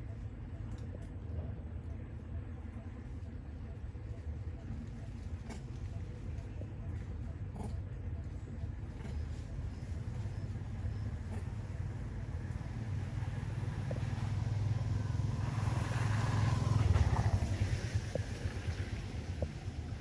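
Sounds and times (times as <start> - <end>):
vehicle engine rumble passing: 9.4 - 20.0.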